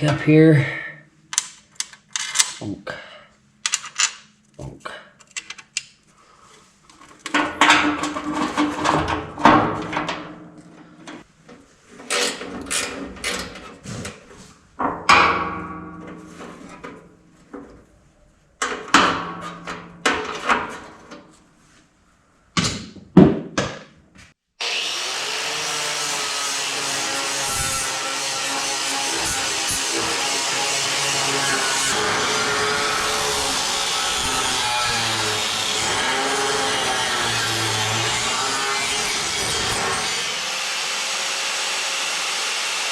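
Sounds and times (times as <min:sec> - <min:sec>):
metal parts clanking: 0:01.4 - 0:02.6, 0:03.6 - 0:04.3.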